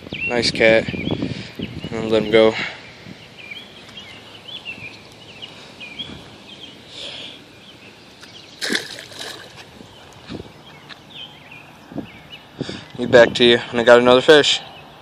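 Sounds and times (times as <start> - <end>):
small birds chirping: 0.0 - 15.0
water sloshing: 8.2 - 10.2
short sharp splashes: 8.6 - 9.7.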